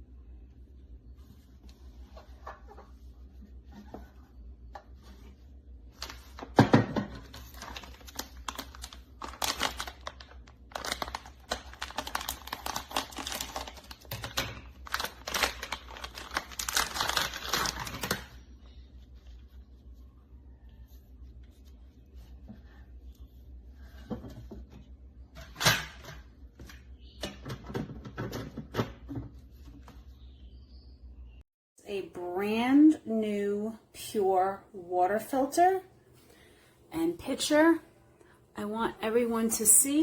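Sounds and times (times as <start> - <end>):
plastic packaging crinkling: 7.2 - 18.4.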